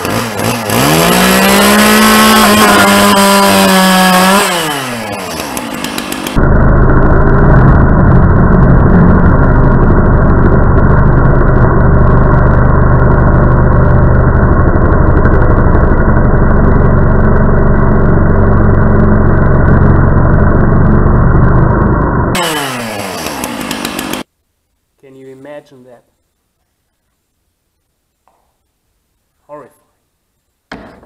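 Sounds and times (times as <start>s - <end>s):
chainsaw cutting: 0.0s - 21.6s, 22.3s - 24.3s.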